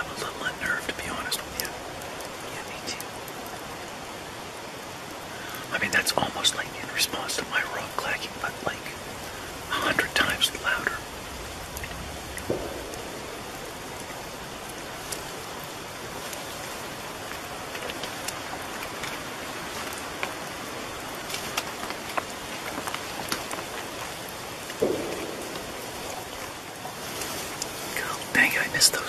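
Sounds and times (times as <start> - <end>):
rain-like hiss: 0.0 - 29.0
dull distant knocks: 12.4 - 14.8, 24.8 - 26.6.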